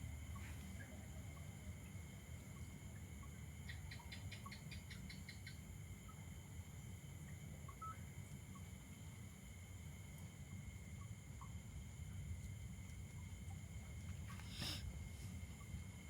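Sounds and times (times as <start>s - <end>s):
small animal chirping: 3.2s - 5.6s.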